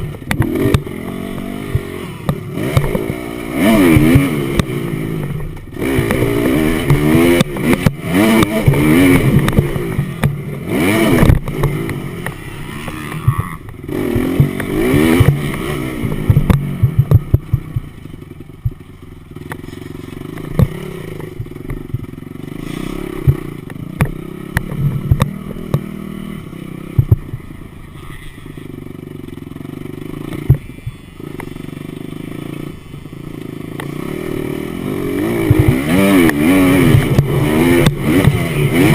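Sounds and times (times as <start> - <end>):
motocross bike engine revving: 0.0 - 38.9
sharp knocks and clatter: 0.1 - 18.0, 19.4 - 22.1, 22.8 - 25.9, 26.9 - 27.4, 35.4 - 38.9.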